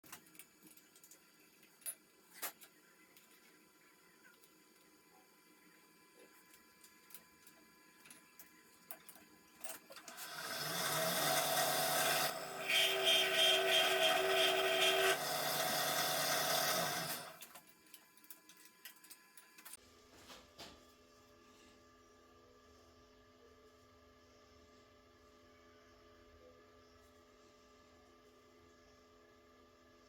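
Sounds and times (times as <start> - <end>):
milling machine spindle spinning: 10.0 - 17.5
end mill cutting steel: 10.1 - 17.4.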